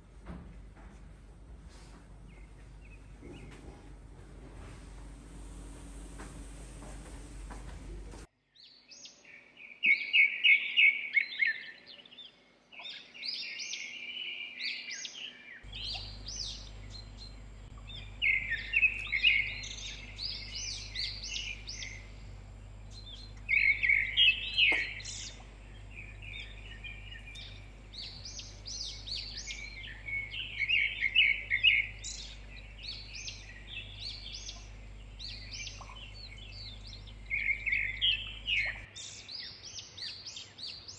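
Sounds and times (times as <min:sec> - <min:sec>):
low steady hum: 0:00.0 - 0:08.3, 0:15.6 - 0:39.4
songbirds chirping: 0:00.0 - 0:40.9.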